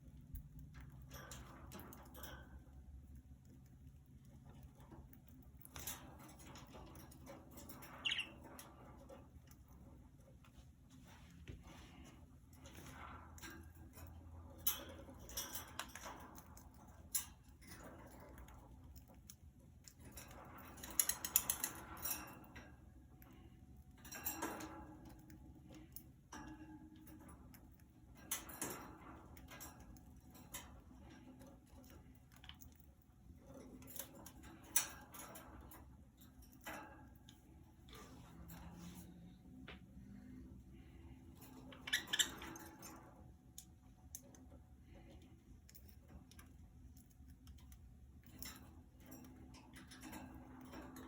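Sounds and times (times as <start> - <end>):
birds clicking on wire cage: 12.7 - 22.8.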